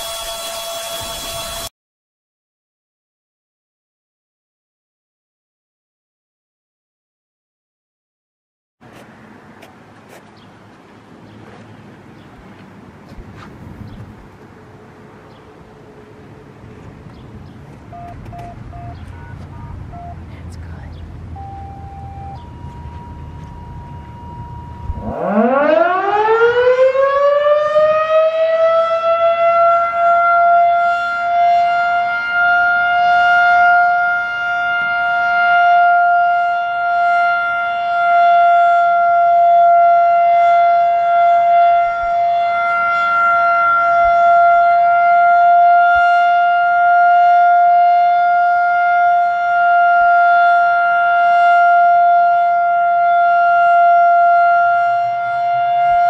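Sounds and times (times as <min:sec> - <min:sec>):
warning siren winding up: 0:00.0 - 0:01.7, 0:21.4 - 0:56.0.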